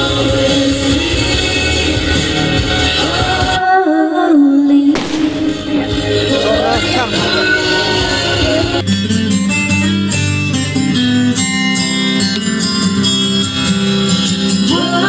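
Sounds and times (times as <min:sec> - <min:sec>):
person singing: 0:02.8 - 0:08.8, 0:14.6 - 0:15.0
acoustic guitar strumming chords: 0:05.0 - 0:15.0.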